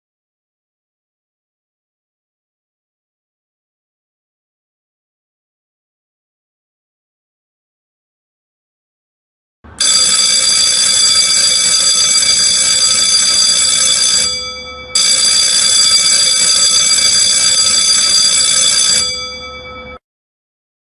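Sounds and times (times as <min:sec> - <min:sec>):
timer alarm ringing: 0:09.8 - 0:20.0.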